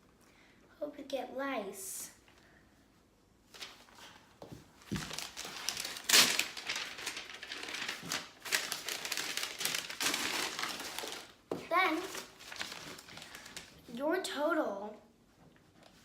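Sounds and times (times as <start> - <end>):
packaging crinkling and rustling: 3.5 - 4.0, 4.8 - 13.9.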